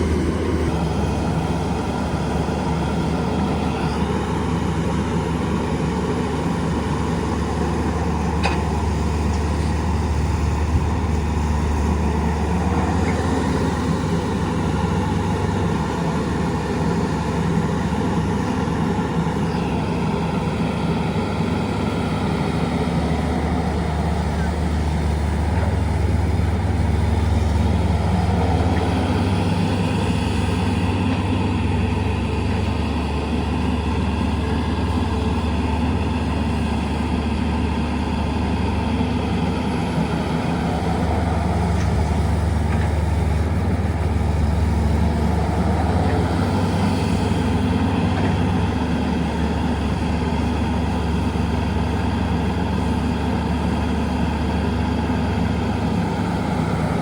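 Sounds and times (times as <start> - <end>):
heavy diesel engines running: 0.0 - 57.0.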